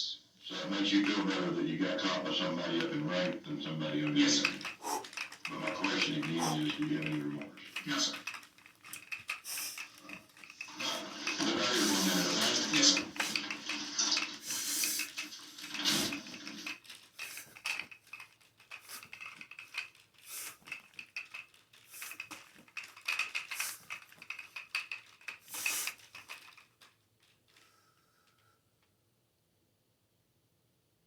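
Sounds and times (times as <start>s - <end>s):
small hard objects clinking: 3.7s - 26.8s.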